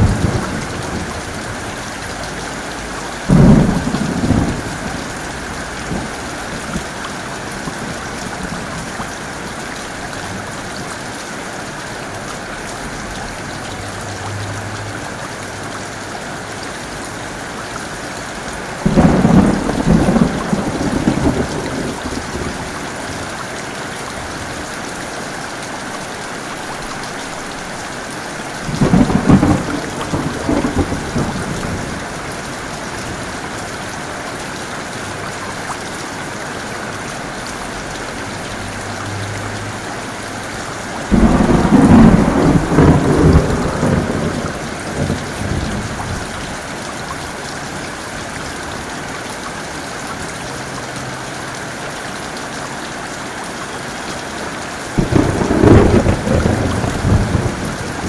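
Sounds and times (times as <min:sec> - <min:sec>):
thunder claps rumbling: 0:00.0 - 0:02.3, 0:03.1 - 0:09.0, 0:18.8 - 0:23.0, 0:28.6 - 0:33.5, 0:41.1 - 0:46.5, 0:55.0 - 0:58.0
heavy rain falling: 0:00.0 - 0:58.0.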